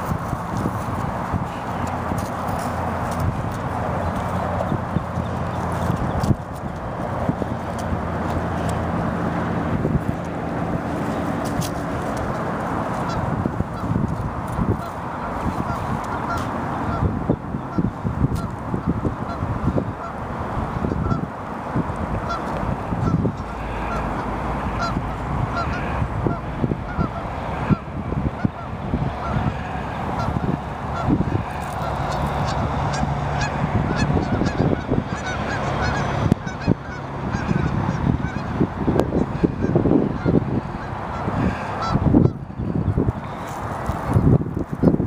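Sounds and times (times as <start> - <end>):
low rumbling noise: 0.0 - 45.0
geese honking: 11.0 - 21.3, 22.2 - 42.6.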